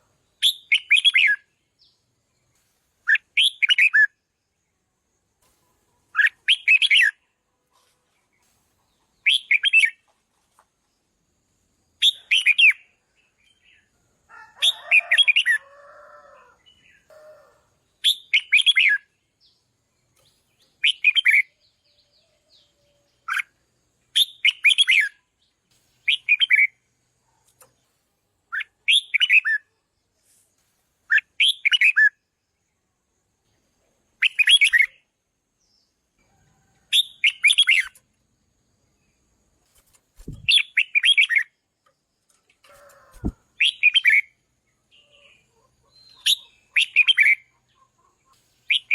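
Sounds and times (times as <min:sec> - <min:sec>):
bird singing bright song phrases: 0:00.3 - 0:04.2, 0:08.2 - 0:10.1, 0:16.4 - 0:26.8, 0:34.2 - 0:36.0, 0:36.7 - 0:38.0, 0:40.2 - 0:41.6, 0:42.3 - 0:48.9
low rough bird chatter: 0:39.5 - 0:41.4.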